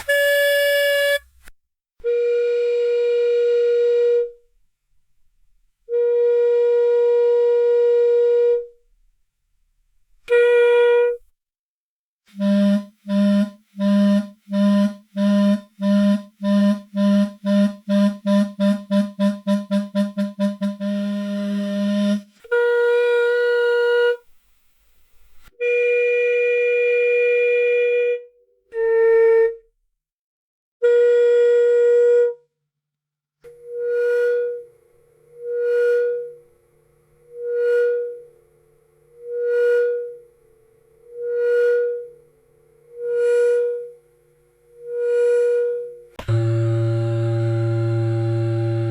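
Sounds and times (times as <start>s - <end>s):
buzzy electronic tone: 46.2s - 48.9s
lower pulsing buzz: 46.2s - 48.9s.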